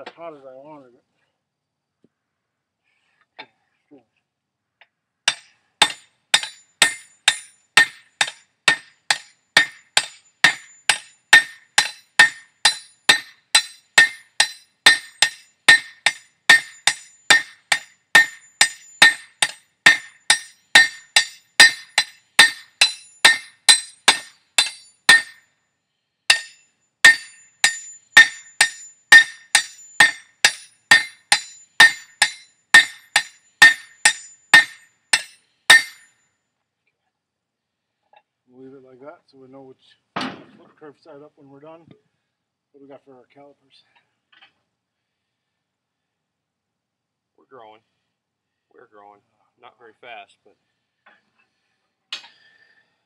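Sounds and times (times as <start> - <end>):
hammer striking steel on anvil: 5.3 - 25.4, 26.3 - 36.1.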